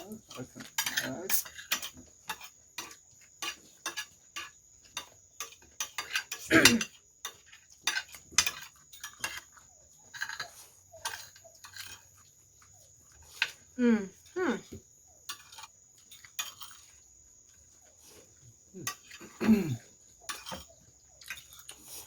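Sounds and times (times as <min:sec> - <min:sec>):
cutlery clinking on plates: 0:00.2 - 0:12.2, 0:15.3 - 0:16.9, 0:18.8 - 0:21.9.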